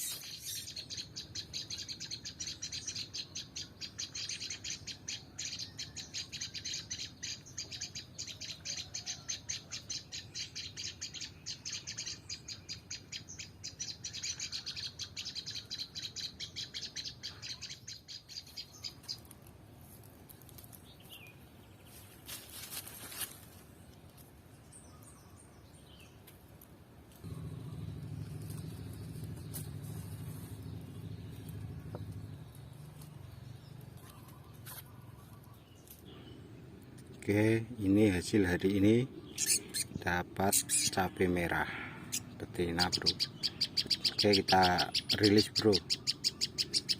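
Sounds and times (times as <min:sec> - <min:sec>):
small bird chirping: 0:00.0 - 0:19.4, 0:27.2 - 0:46.9.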